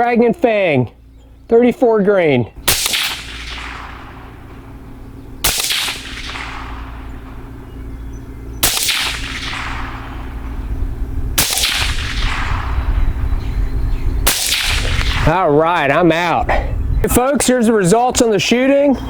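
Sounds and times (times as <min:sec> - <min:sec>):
steady low hum: 0:00.0 - 0:19.0
pistol shots with echo: 0:02.6 - 0:10.8, 0:11.4 - 0:13.5, 0:14.2 - 0:15.4.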